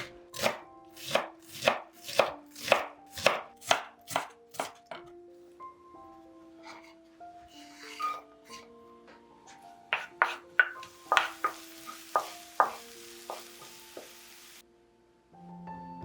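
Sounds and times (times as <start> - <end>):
soft background music: 0.0 - 16.0
spatula knocking against pan: 9.9 - 14.2
onion sizzling in oil: 10.2 - 14.6.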